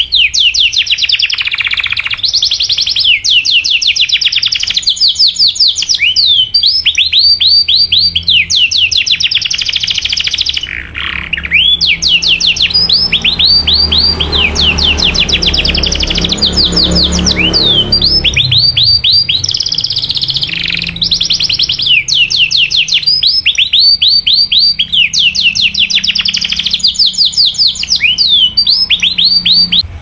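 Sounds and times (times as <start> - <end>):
canary singing in trills: 0.0 - 29.9.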